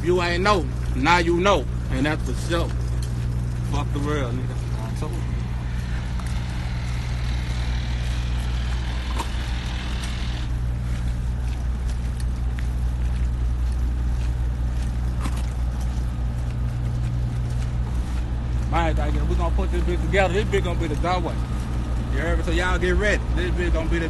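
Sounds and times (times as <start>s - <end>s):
low engine hum: 0.0s - 24.0s
hissing noise: 4.8s - 10.6s.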